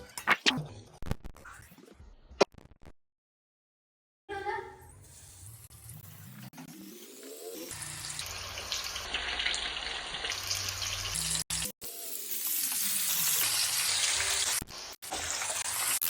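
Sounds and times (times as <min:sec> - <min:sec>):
food sizzling in hot oil: 0:05.0 - 0:16.0.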